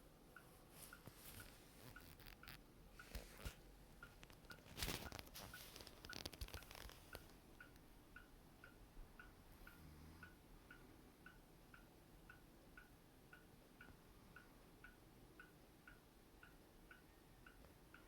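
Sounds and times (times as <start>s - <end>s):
clock ticking faintly: 0.0s - 18.0s.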